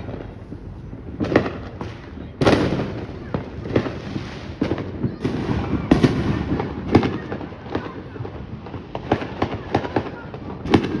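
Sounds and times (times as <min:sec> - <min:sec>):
fireworks bangs and crackling: 0:00.0 - 0:11.0.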